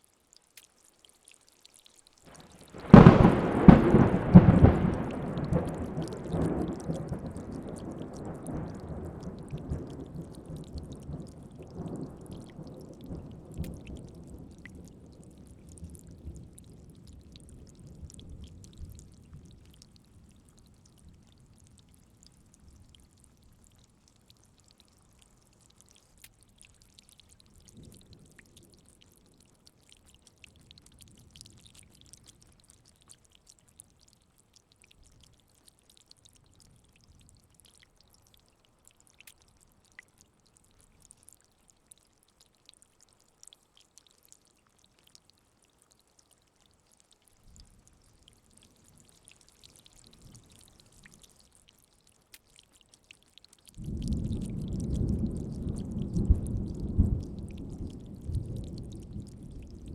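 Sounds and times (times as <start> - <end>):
thunderclap and rolling rumble: 2.7 - 7.8, 53.8 - 59.9.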